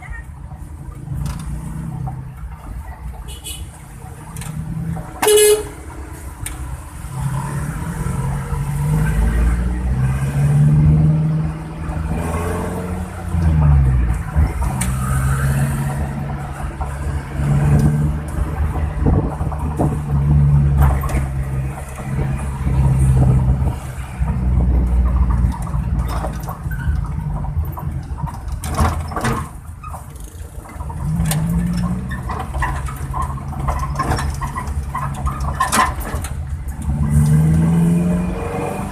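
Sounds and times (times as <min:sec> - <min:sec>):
engine revving with deep exhaust: 0:36.7 - 0:38.9.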